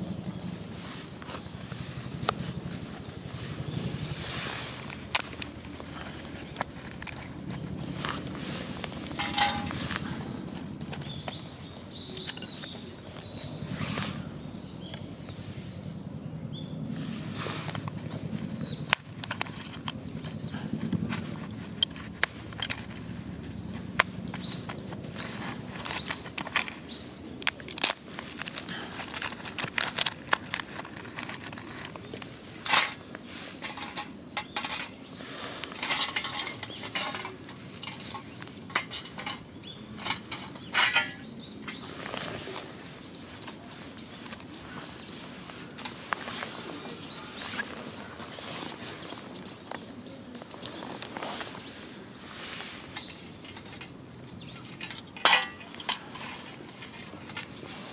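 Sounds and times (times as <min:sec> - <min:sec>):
wood burning with crackles: 0:00.0 - 0:14.1, 0:17.0 - 0:46.8.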